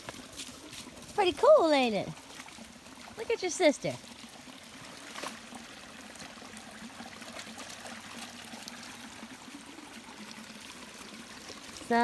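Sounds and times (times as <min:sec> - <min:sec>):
creek water running: 0:00.0 - 0:12.0.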